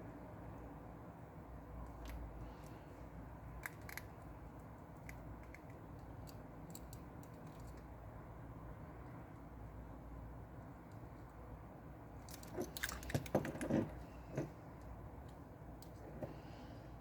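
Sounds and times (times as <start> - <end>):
small parts clicking and tapping: 3.5 - 7.9.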